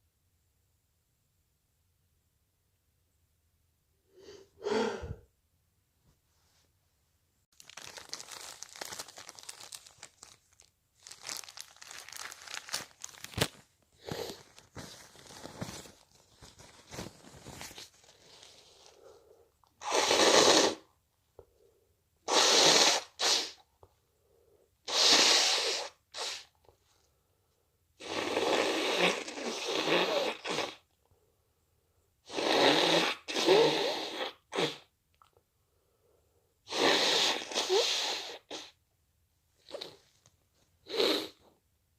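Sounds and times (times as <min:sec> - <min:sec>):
person blowing nose: 0:04.1 - 0:05.2, 0:13.4 - 0:15.9, 0:19.8 - 0:20.9, 0:22.2 - 0:23.6, 0:24.8 - 0:26.6, 0:28.0 - 0:30.8, 0:32.2 - 0:34.9, 0:36.7 - 0:38.8, 0:39.6 - 0:40.1, 0:40.8 - 0:41.5
paper tissue crinkling: 0:07.5 - 0:19.0.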